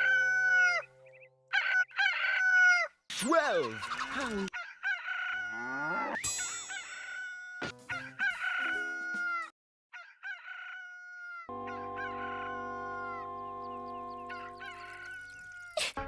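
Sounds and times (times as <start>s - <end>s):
rooster crowing: 1.5s - 2.9s, 4.5s - 6.2s, 7.0s - 13.3s.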